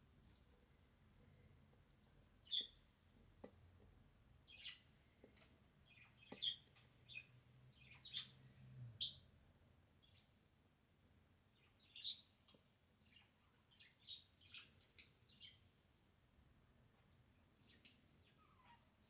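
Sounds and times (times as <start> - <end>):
faint bird chirps: 2.4 - 3.0, 4.4 - 9.3, 11.5 - 15.8, 17.4 - 19.0.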